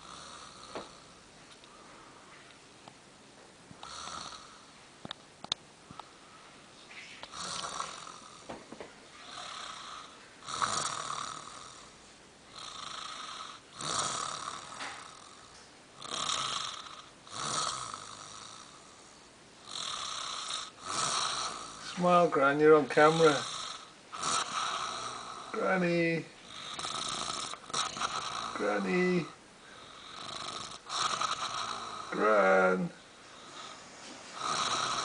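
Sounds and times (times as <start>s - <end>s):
woman snoring: 0.0s - 1.1s, 3.8s - 4.7s, 7.2s - 8.6s, 9.2s - 22.2s, 22.9s - 35.0s.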